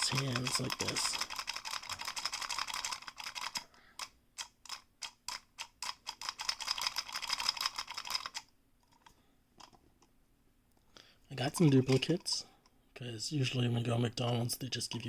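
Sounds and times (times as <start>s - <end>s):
plastic toy clicking and rattling: 0.0s - 9.8s, 11.5s - 12.4s, 14.3s - 15.0s.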